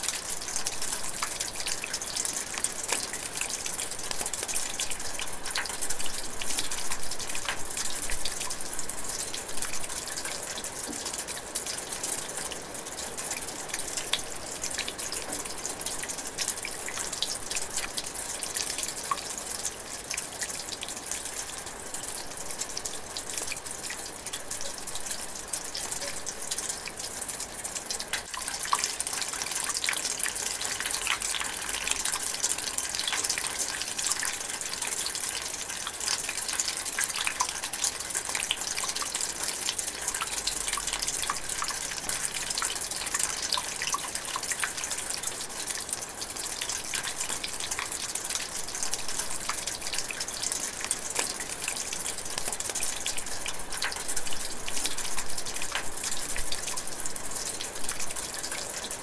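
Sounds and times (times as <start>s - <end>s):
light rain pattering and dripping: 0.0s - 59.0s.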